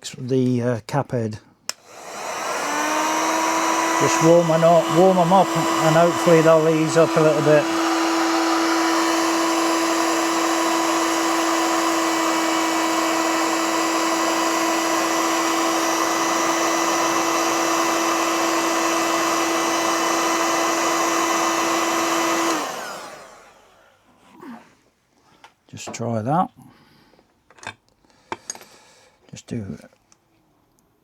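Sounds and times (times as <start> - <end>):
heat gun blowing: 1.7 - 24.1.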